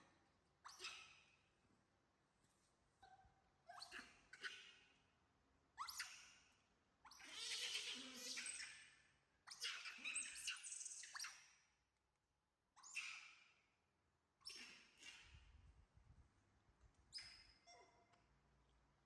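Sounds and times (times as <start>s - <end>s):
young monkey squeaking and chirping: 0.6s - 1.1s, 5.8s - 6.3s, 7.0s - 11.5s, 12.8s - 13.2s, 14.4s - 15.4s.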